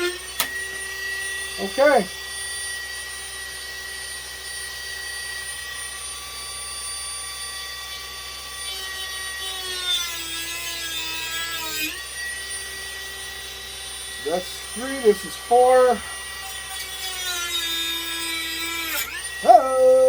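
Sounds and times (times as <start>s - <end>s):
rotary tool whining: 0.0s - 20.0s
rasping cutting into wood: 8.6s - 12.1s, 14.0s - 19.8s.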